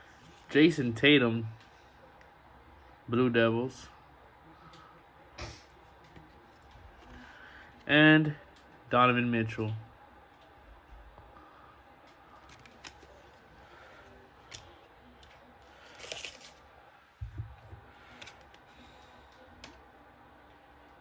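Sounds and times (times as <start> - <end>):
card handling clicks: 12.4 - 13.4.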